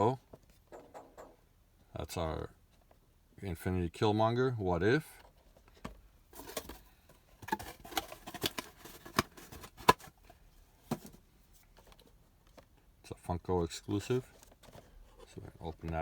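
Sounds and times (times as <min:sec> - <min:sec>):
packaging rustling: 0:06.3 - 0:10.3.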